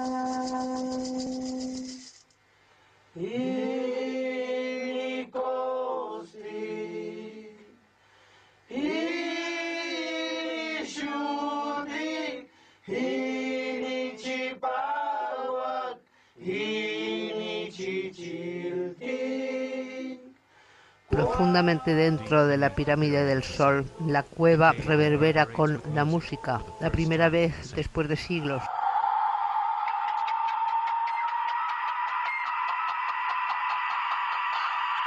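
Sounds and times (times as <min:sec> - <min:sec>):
voices chanting: 0:08.7 - 0:20.4, 0:21.1 - 0:35.0.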